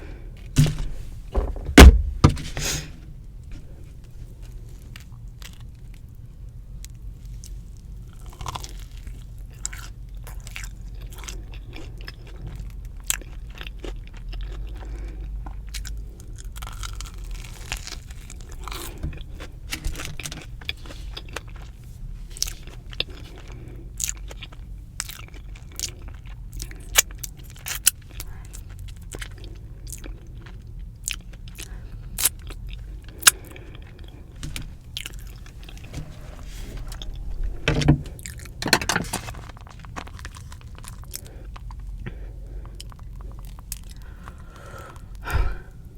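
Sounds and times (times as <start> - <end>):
crunchy chewing: 7.4 - 45.2.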